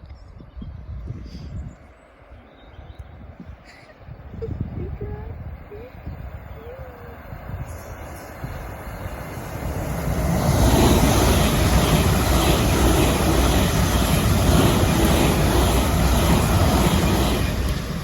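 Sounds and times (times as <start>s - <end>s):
train passing at speed: 4.0s - 18.0s.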